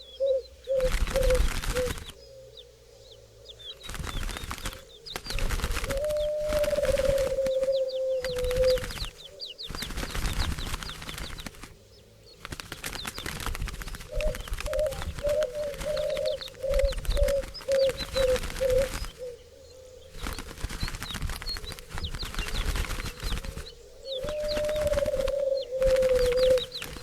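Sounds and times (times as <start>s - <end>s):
dove cooing: 0.0s - 3.7s, 4.3s - 9.7s, 13.7s - 20.6s, 21.6s - 27.0s
small birds chirping: 0.0s - 27.0s
wings flapping: 0.7s - 2.2s, 3.6s - 19.4s, 20.1s - 27.0s.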